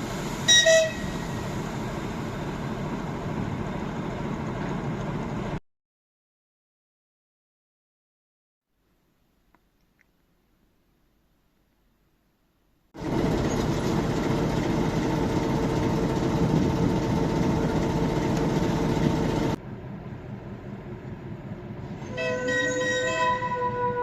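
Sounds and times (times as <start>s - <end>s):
train running on rails: 0.0s - 5.6s, 13.0s - 24.0s
quiet rumble: 13.0s - 22.0s
wind instrument playing: 22.0s - 24.0s.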